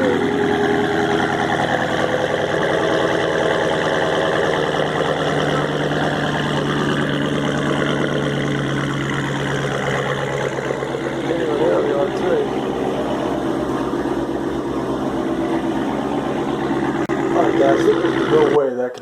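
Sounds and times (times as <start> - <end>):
car engine idling loudly: 0.0 - 19.0.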